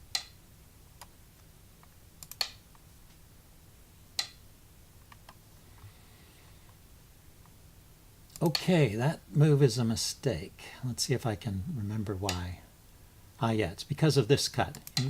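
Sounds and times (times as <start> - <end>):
faint low hum: 0.0 - 15.0
sharp short clicks: 2.2 - 2.6, 8.3 - 8.7, 14.7 - 15.0.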